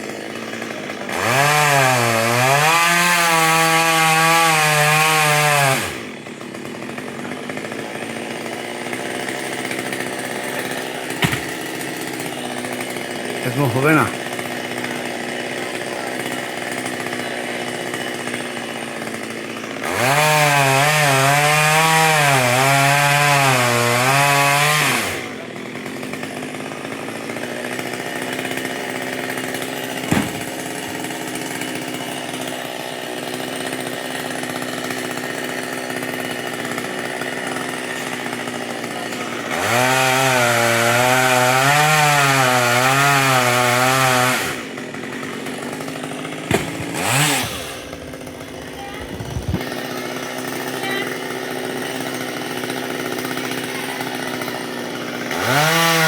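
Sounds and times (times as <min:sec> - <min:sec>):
chainsaw running and revving: 0:00.0 - 0:56.0.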